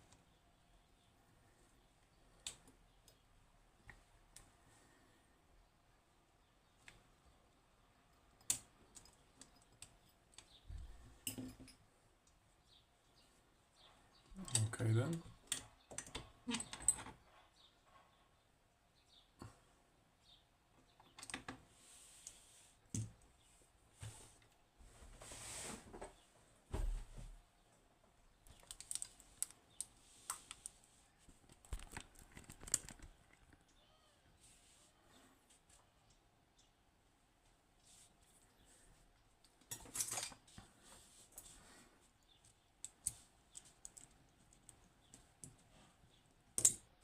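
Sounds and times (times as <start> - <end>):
small metal parts clicking: 28.5 - 29.9, 42.4 - 44.8.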